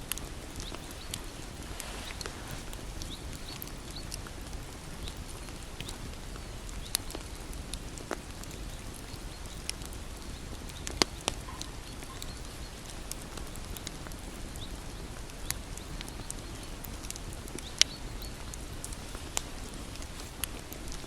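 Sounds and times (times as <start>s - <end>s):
burning wood popping and snapping: 0.0s - 21.0s
low rumble of flames: 0.0s - 21.0s.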